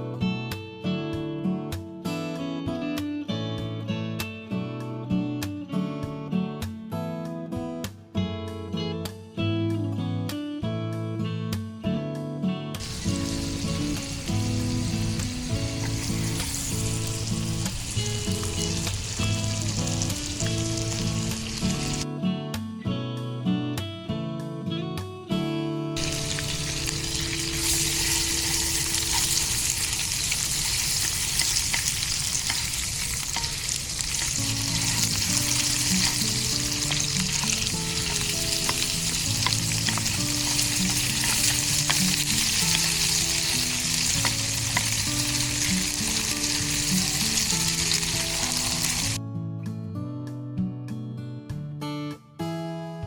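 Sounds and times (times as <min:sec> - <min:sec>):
quiet guitar music: 0:00.0 - 0:53.0
food sizzling in a pan: 0:12.8 - 0:22.0, 0:26.0 - 0:49.2.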